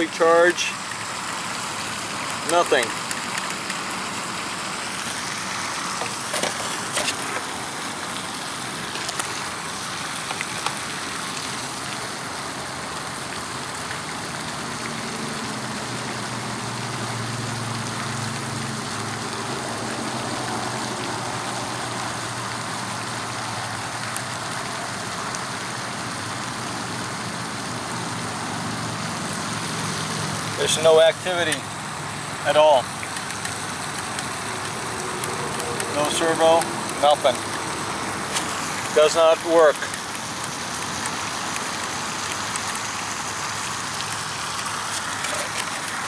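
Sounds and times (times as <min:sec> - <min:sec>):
sharp clicks: 0:02.2 - 0:03.8, 0:32.9 - 0:35.9.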